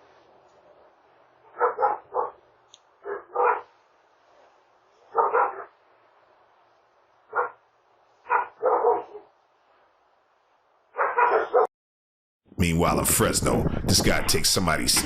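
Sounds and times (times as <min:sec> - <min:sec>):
dog barking: 0:01.5 - 0:02.4, 0:03.0 - 0:03.7, 0:05.0 - 0:05.8, 0:07.3 - 0:07.6, 0:08.2 - 0:09.3, 0:10.9 - 0:11.7.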